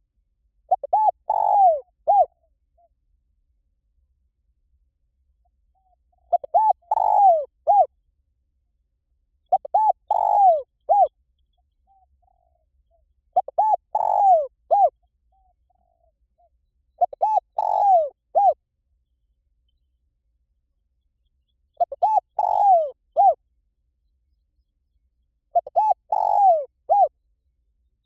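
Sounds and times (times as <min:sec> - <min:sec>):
dove cooing: 0:00.7 - 0:02.4, 0:05.9 - 0:07.9, 0:09.5 - 0:11.1, 0:13.4 - 0:15.0, 0:17.0 - 0:18.6, 0:21.8 - 0:23.4, 0:25.5 - 0:27.1.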